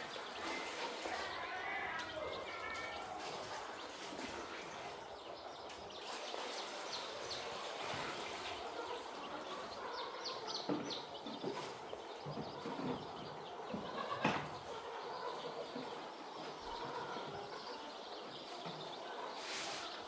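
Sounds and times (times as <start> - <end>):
chicks cheeping: 0.0 - 20.0.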